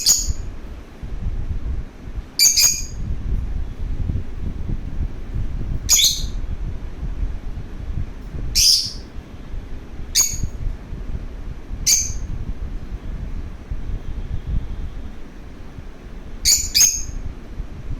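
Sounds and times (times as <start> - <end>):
lovebird chirping: 0.0 - 0.5, 2.4 - 3.0, 5.9 - 6.4, 8.6 - 9.1, 10.1 - 10.6, 11.8 - 12.3, 16.4 - 17.2
low rumble: 0.0 - 17.9.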